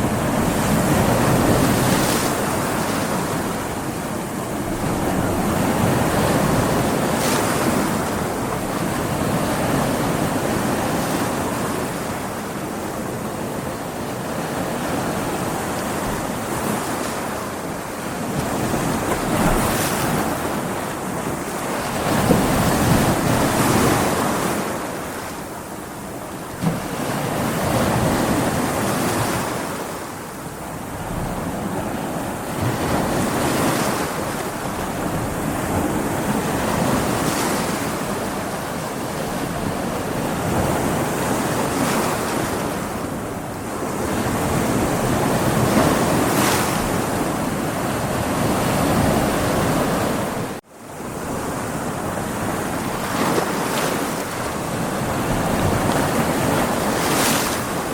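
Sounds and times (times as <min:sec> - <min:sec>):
ocean waves breaking on rocks: 0:00.0 - 0:57.9.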